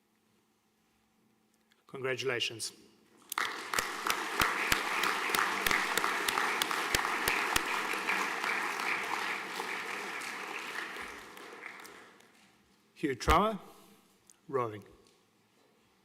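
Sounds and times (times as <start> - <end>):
audience applause: 3.3 - 12.4.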